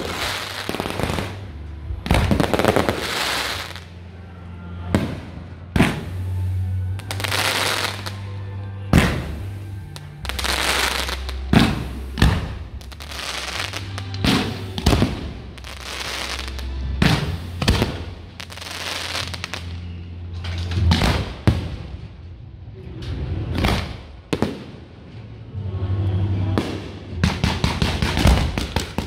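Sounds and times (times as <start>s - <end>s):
fireworks bangs with crackling hiss: 0.0s - 3.9s, 4.9s - 8.2s, 8.9s - 19.8s, 20.8s - 22.0s, 23.6s - 24.7s, 26.6s - 29.0s
music with low bass: 0.0s - 29.0s.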